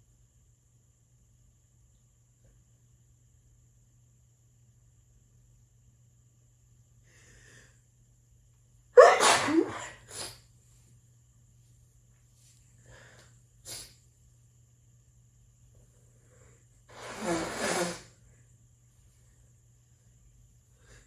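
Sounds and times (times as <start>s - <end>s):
breathy puff: 9.0s - 10.4s, 12.9s - 14.0s, 16.9s - 18.2s
person sneezing: 9.0s - 10.4s, 16.9s - 18.1s.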